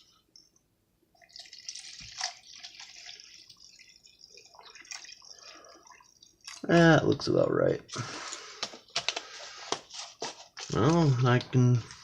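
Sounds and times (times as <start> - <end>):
water pouring from bottle: 1.2 - 9.6.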